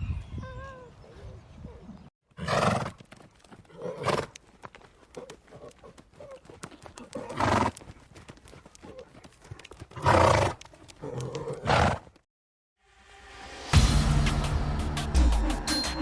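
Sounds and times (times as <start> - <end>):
light hoof clops: 2.8 - 12.2.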